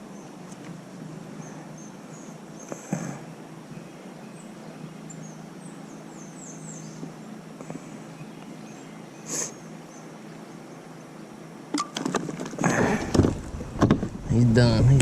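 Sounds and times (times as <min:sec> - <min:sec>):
bird chirping: 0:01.3 - 0:11.4
brief hiss: 0:09.2 - 0:09.6.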